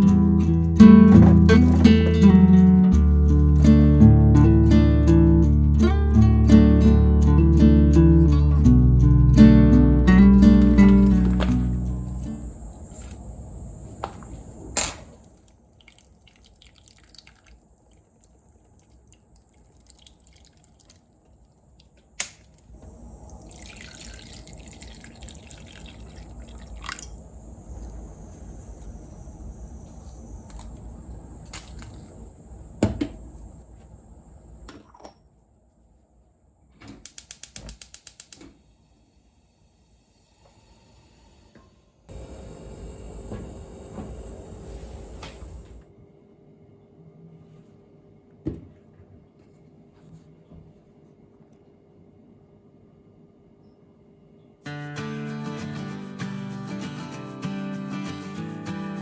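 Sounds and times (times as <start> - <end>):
water running into sink: 23.3 - 27.2.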